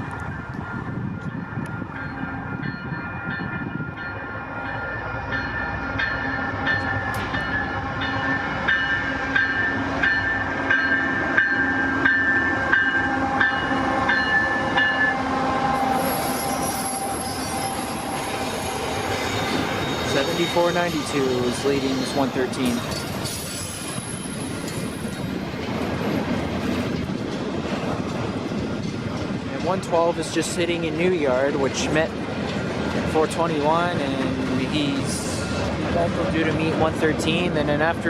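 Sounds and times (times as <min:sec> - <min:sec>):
freight train passing: 0:00.0 - 0:38.0
high wheel squeal: 0:15.0 - 0:25.2.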